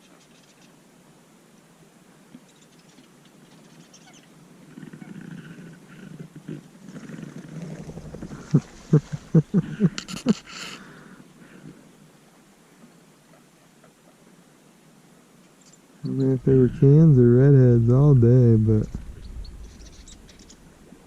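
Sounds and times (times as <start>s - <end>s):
low rough rumbling: 7.5s - 9.8s, 16.1s - 21.0s.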